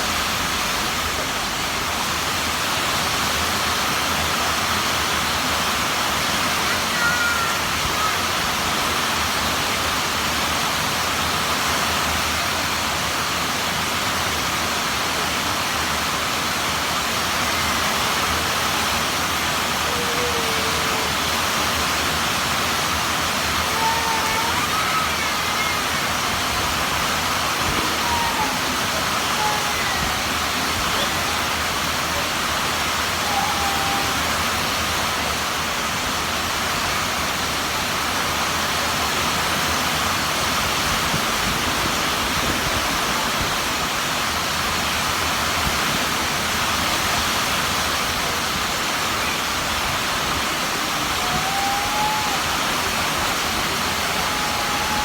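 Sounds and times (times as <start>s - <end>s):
heavy rain pouring: 0.0s - 55.0s
faint short calls: 22.8s - 34.8s.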